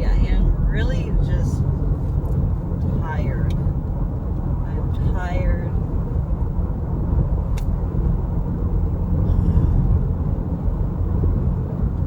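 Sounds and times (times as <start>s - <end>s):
road and engine rumble in car: 0.0s - 12.0s
small click: 7.5s - 7.7s.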